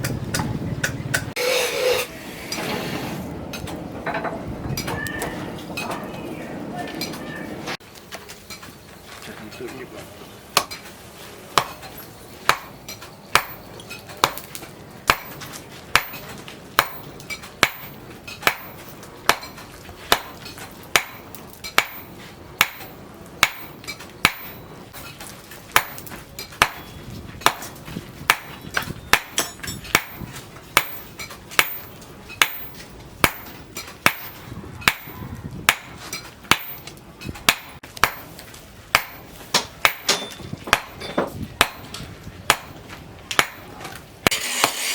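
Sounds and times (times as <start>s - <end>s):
hammer striking steel on anvil: 11.6s - 24.7s, 25.8s - 44.9s.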